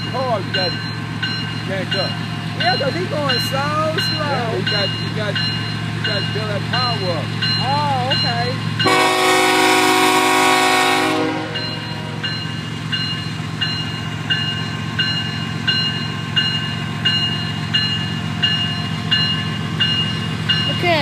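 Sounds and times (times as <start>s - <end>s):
bell ringing: 0.0s - 9.0s, 11.5s - 21.0s
diesel engine hum: 0.0s - 21.0s
locomotive air horn chord: 8.8s - 12.2s.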